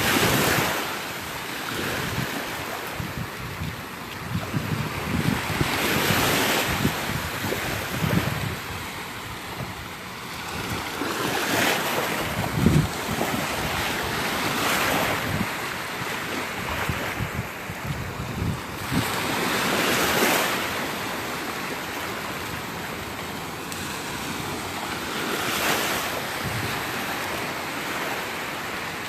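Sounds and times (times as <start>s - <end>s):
waves breaking on beach: 0.0s - 29.0s
wind buffeting microphone: 1.8s - 20.8s, 25.6s - 28.1s.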